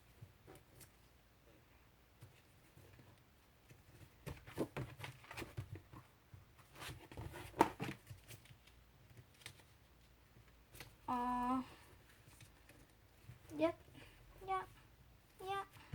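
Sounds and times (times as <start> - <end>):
stationery rustling and clicking: 0.0 - 11.1.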